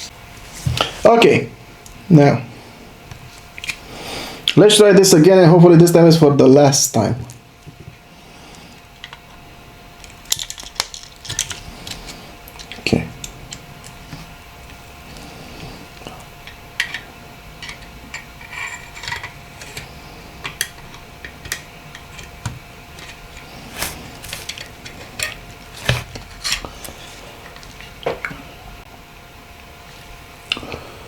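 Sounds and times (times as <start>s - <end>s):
small phone parts clicking and tapping: 10.0s - 14.0s.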